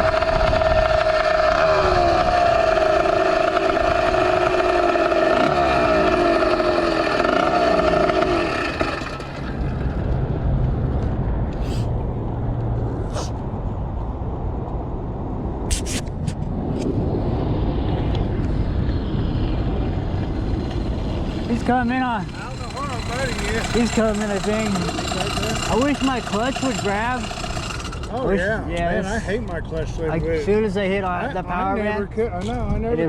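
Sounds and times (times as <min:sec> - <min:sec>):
wavering engine note: 0:00.0 - 0:10.3, 0:18.4 - 0:28.2
two-stroke engine running: 0:00.0 - 0:10.8, 0:19.6 - 0:28.4
low rumble: 0:00.0 - 0:28.7
wind noise: 0:00.0 - 0:33.0.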